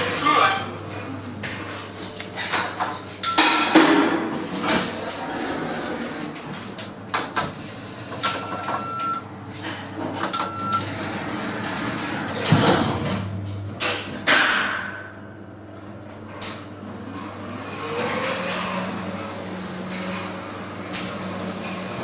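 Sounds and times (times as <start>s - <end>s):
lift doors sliding: 0.0s - 14.3s.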